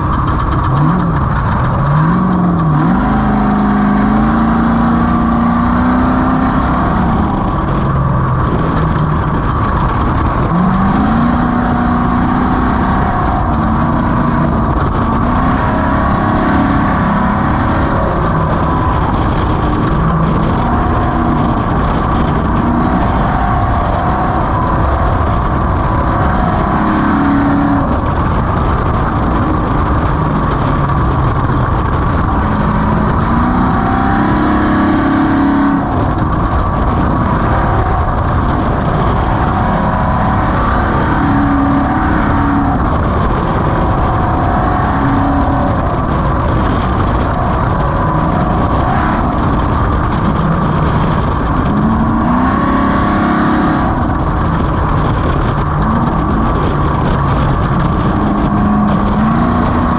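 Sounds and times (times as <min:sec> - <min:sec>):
off-road vehicle engine revving: 0:00.0 - 0:59.9.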